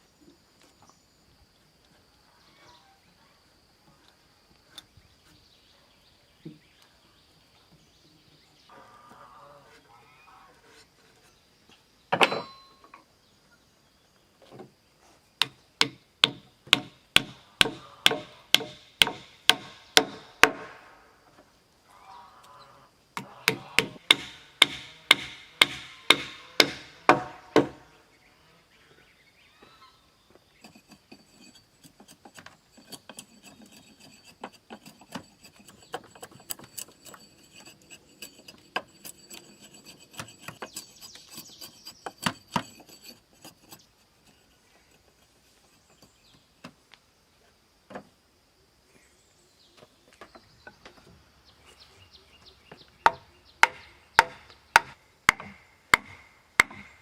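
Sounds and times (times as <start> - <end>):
hand tool striking wood: 15.4 - 21.0, 23.2 - 27.8, 30.6 - 44.4, 52.7 - 57.0
light tapping and scraping on wood: 30.3 - 47.0.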